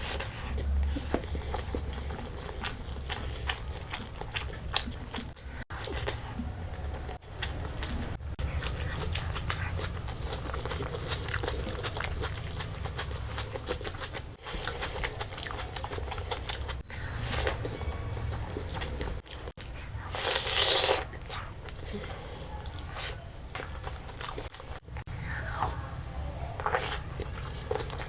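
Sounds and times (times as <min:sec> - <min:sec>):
person chewing food: 0:00.0 - 0:25.9, 0:26.6 - 0:28.0.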